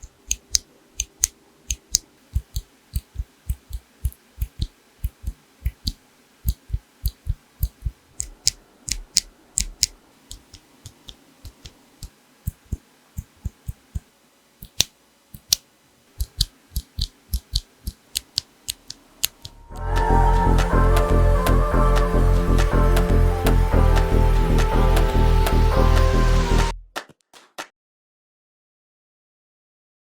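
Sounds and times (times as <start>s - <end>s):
mechanical keyboard typing: 0.0s - 13.8s, 16.2s - 19.5s.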